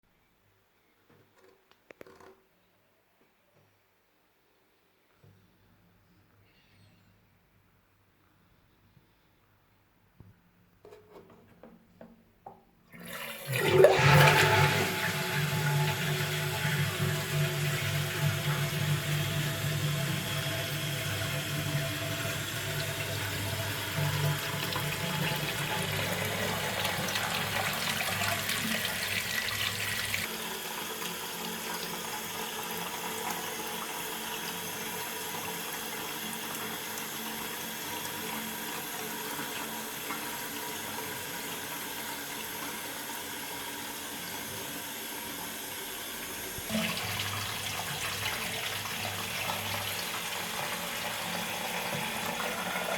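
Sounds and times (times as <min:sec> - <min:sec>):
water running in toilet tank: 0:12.9 - 0:52.9.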